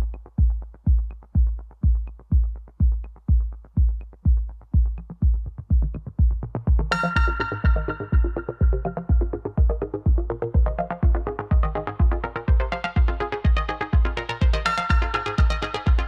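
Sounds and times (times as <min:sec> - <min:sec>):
electronic music kick drum: 0:00.0 - 0:16.0
synthesizer chord: 0:06.9 - 0:16.0.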